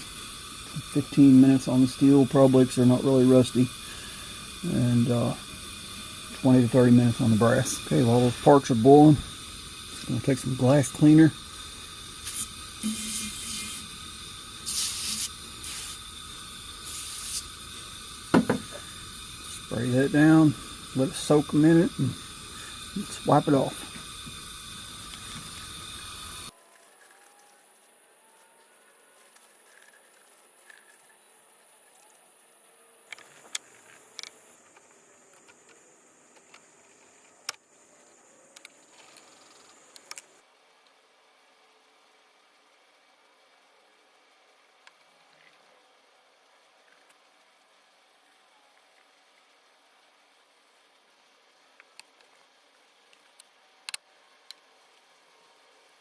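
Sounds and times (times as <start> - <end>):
trigger spray bottle spraying: 0.0 - 26.5
stove burner hiss: 0.0 - 26.6, 33.0 - 56.0.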